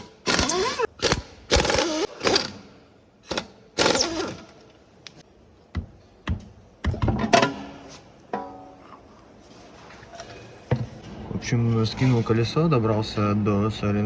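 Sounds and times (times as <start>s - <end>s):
impact wrench bursts: 0.0s - 4.6s.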